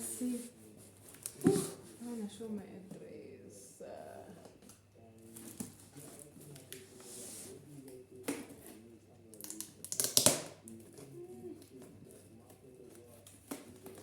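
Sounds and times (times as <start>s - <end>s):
packaging crinkling or tearing: 9.4s - 10.8s.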